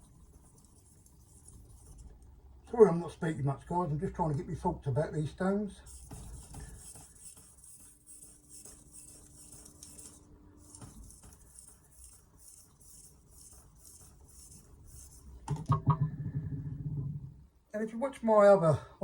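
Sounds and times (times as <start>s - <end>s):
knocks: 15.5s - 17.4s.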